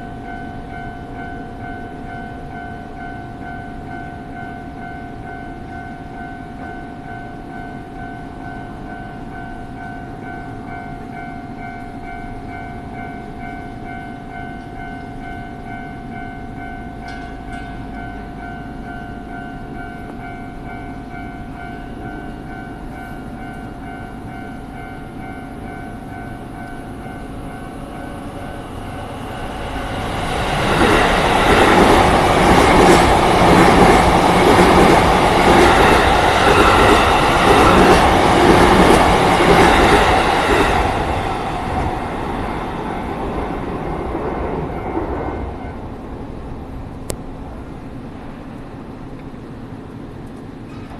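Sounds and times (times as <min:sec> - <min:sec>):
train rushing past: 0:17.0 - 0:50.9.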